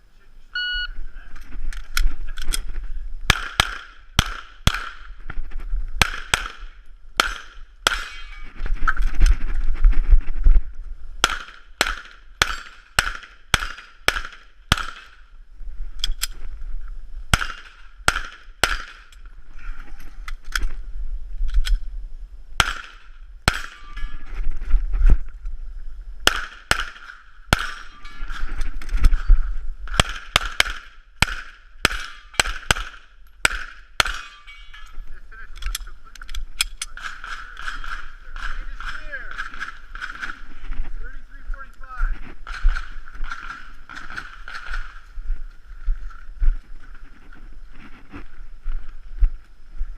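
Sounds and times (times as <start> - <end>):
pistol shots: 3.3 - 5.1, 6.0 - 8.2, 11.2 - 15.2, 17.3 - 19.2, 22.6 - 24.0, 26.2 - 28.4, 29.9 - 34.5, 36.9 - 40.4, 42.4 - 45.0.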